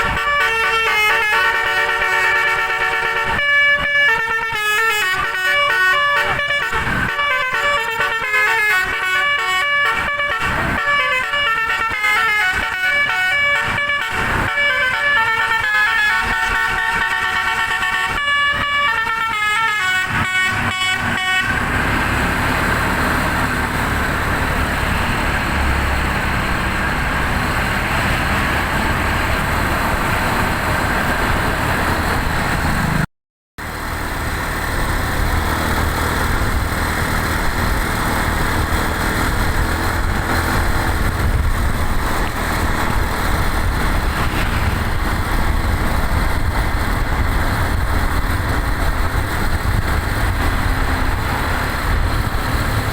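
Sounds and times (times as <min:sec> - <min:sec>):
musical air horn toots: 0:00.0 - 0:21.7
bus engine and road noise: 0:00.0 - 0:52.9.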